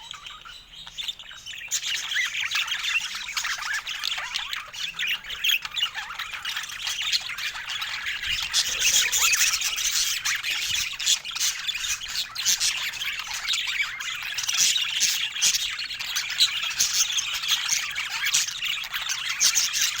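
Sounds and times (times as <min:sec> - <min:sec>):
budgerigar chirping and warbling: 0:00.0 - 0:20.0.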